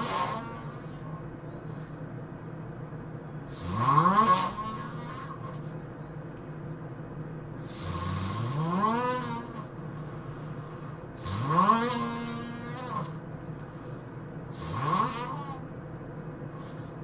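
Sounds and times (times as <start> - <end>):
man snoring: 0.0 - 1.2, 3.5 - 5.6, 7.6 - 13.2, 14.5 - 15.6
steady hum: 0.0 - 17.0.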